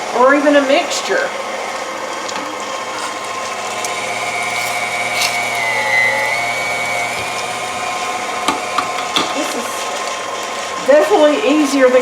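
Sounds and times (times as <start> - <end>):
stand mixer motor whine: 1.4 - 10.9
meat grinder grinding: 1.5 - 10.8.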